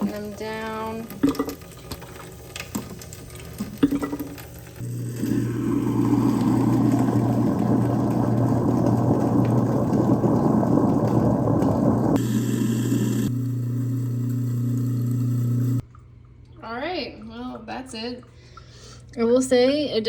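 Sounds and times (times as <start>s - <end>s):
tablets clicking into drain: 0.0s - 11.9s.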